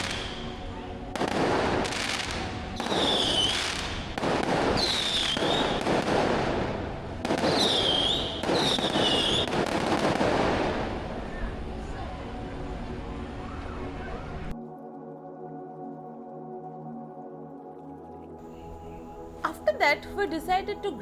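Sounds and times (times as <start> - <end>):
fireworks whistling: 0.0 - 12.0
fireworks crackling: 0.0 - 14.5.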